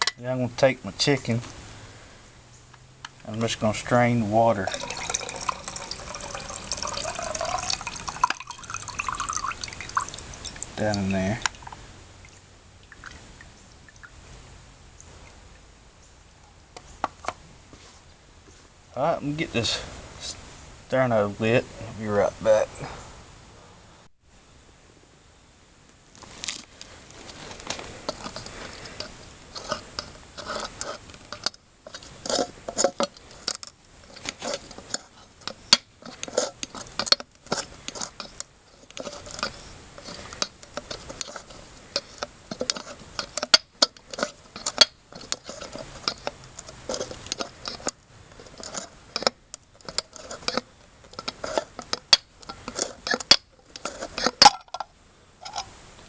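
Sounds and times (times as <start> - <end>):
rustling: 17.1 - 18.8, 26.1 - 54.8.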